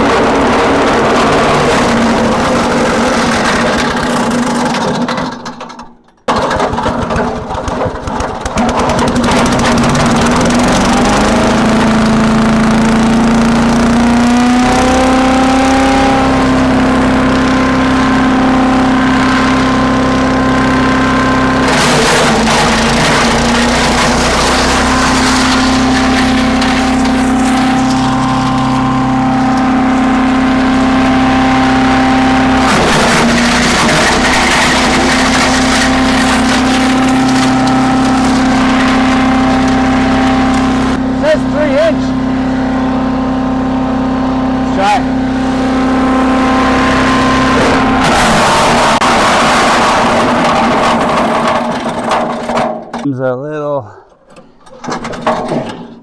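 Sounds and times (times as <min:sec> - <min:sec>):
small gasoline engine running: 0:00.0 - 0:05.7, 0:06.3 - 0:52.8.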